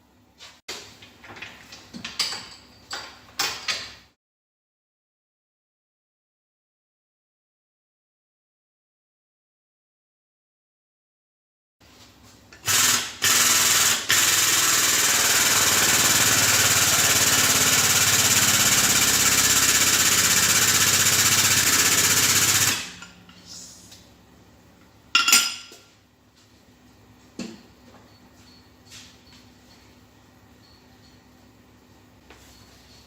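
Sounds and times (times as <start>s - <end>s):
power tool rattling: 12.6s - 23.1s.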